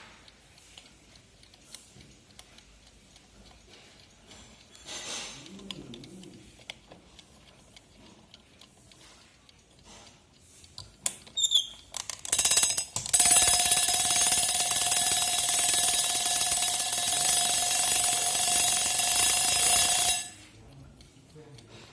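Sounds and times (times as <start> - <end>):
clock clicks: 0.0 - 21.7
clock ticking: 0.0 - 21.7
alarm clock bell ringing: 12.2 - 20.5.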